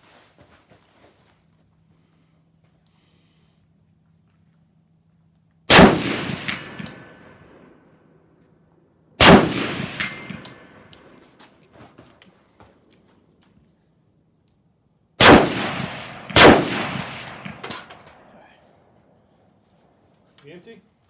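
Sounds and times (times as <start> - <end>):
rifle shots echoing: 5.7 - 7.8, 9.2 - 11.2, 15.2 - 18.6.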